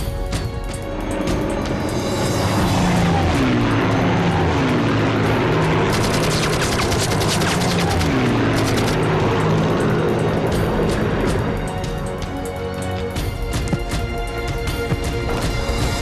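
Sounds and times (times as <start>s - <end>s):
low drone with sustained tones: 0.4s - 13.3s
rapid gunfire: 5.8s - 9.0s.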